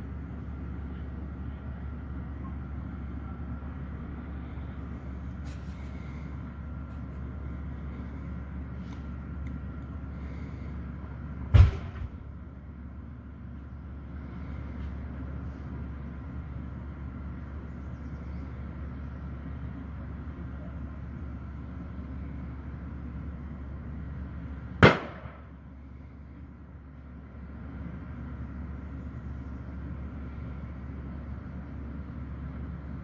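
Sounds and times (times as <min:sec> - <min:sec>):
steady low rumble: 0:00.0 - 0:33.0
sharp bangs from burning backhoe: 0:11.5 - 0:12.3, 0:24.8 - 0:25.5.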